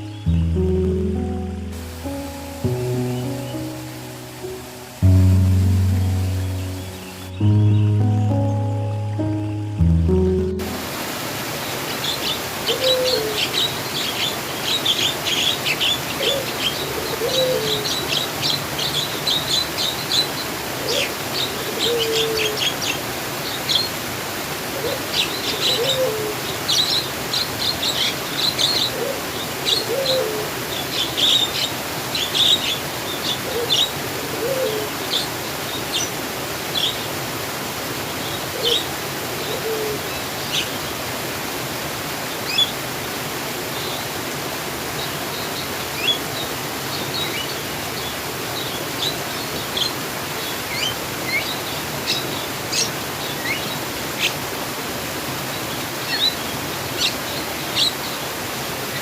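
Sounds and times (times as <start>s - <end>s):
songbirds chirping: 0.0s - 10.9s
flowing water: 0.0s - 59.0s.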